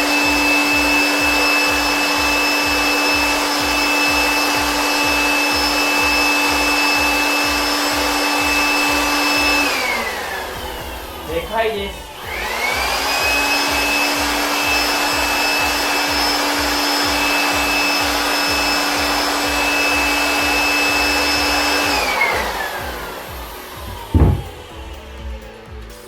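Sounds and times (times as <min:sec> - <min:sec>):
electric air pump whining: 0:00.0 - 0:25.8
thump: 0:23.9 - 0:24.7.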